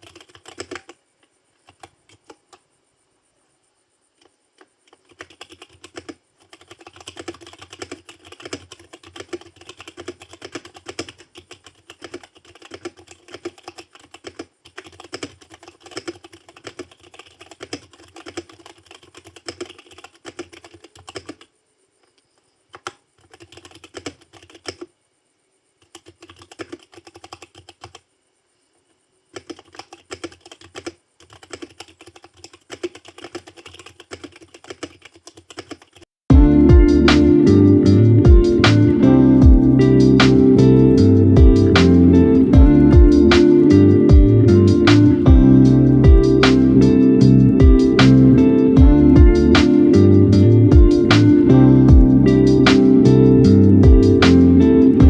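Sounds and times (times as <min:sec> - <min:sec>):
mechanical keyboard typing: 0:00.0 - 0:01.0, 0:01.6 - 0:02.6, 0:04.6 - 0:21.5, 0:22.7 - 0:24.9, 0:25.8 - 0:28.0, 0:29.3 - 0:36.2.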